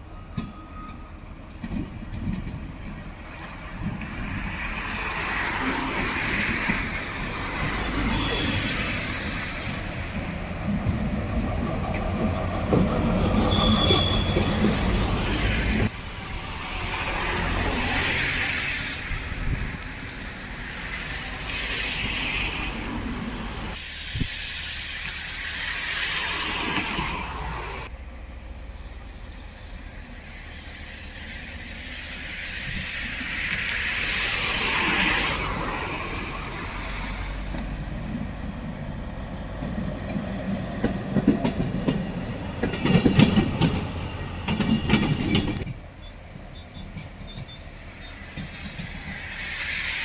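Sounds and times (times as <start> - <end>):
train running on rails: 0.0 - 50.0
high wheel squeal: 0.2 - 1.3, 7.5 - 9.2, 13.2 - 15.9.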